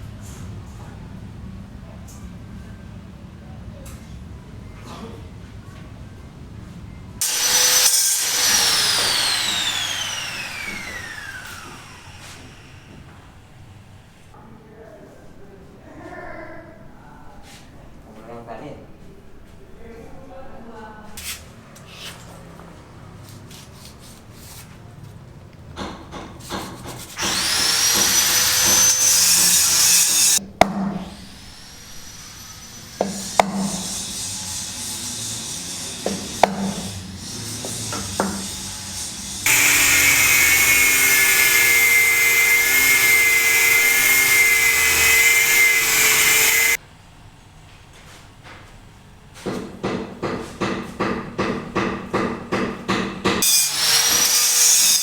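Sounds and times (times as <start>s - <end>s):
power tool whining: 7.2s - 13.5s, 27.2s - 30.4s, 31.1s - 46.8s
saw or grinder whining: 7.2s - 13.5s, 27.1s - 30.4s, 31.1s - 46.8s, 53.4s - 55.0s
sharp knocks: 49.5s - 53.4s.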